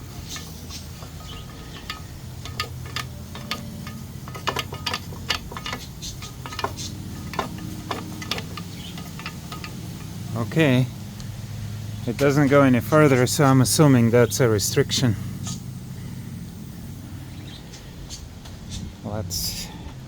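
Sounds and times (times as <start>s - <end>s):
hose clicking and knocking in pipe: 0.0s - 10.6s
low steady hum: 0.0s - 20.0s.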